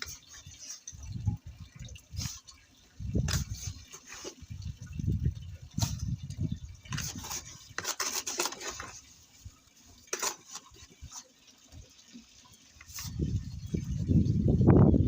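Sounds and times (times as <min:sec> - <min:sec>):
tool scraping mortar in bucket: 0:03.2 - 0:04.4, 0:06.9 - 0:09.3, 0:09.9 - 0:11.4.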